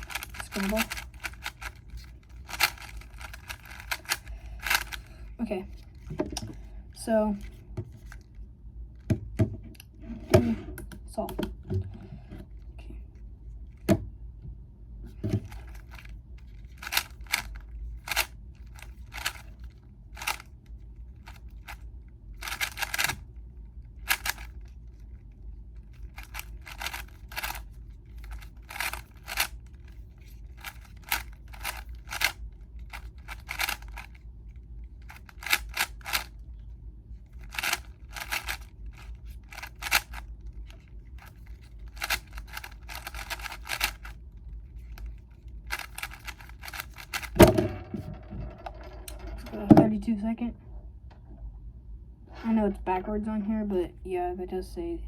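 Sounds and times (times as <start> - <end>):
puzzle cube clicky turns: 0.0 - 6.6, 15.4 - 36.5, 37.2 - 47.5.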